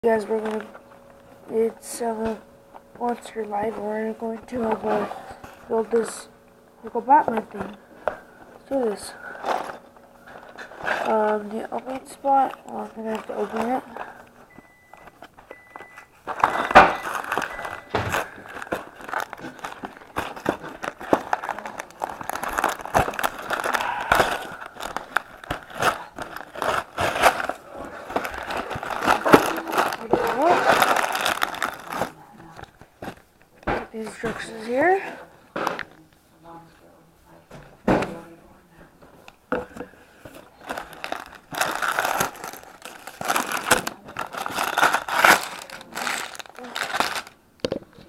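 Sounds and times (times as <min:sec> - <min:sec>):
packaging crinkling: 0:07.0 - 0:34.7, 0:39.5 - 0:48.0.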